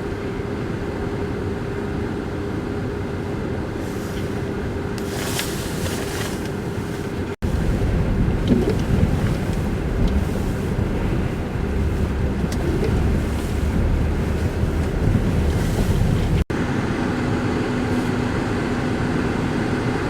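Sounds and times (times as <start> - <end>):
constant low hum: 0.0 - 20.0
wind buffeting microphone: 6.6 - 16.5.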